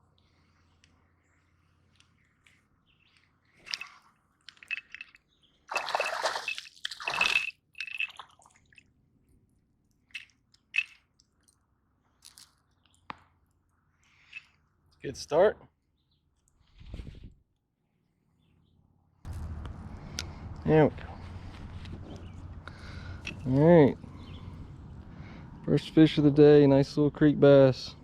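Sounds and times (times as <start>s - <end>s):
fish splashing in water: 3.6s - 8.8s.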